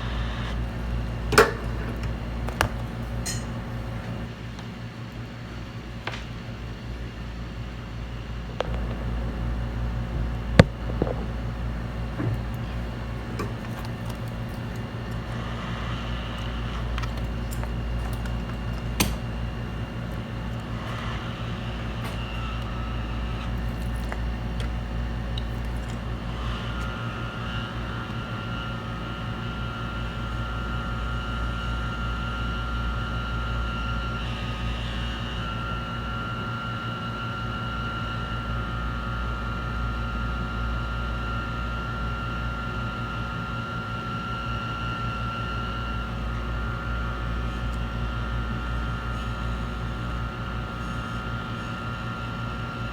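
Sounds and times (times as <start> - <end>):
machine hum: 0.0 - 4.4, 8.2 - 34.9.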